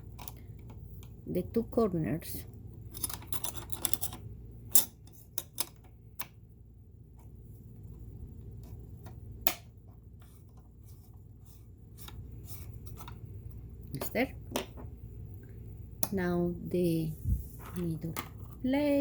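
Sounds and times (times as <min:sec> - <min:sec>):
screwdriver and metal parts clicking: 0:02.9 - 0:05.9.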